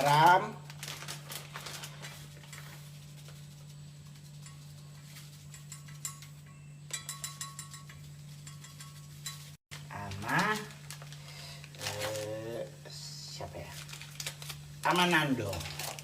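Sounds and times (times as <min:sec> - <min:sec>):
steady low hum: 0:01.4 - 0:15.7
utensils and dishes clinking: 0:04.2 - 0:10.6.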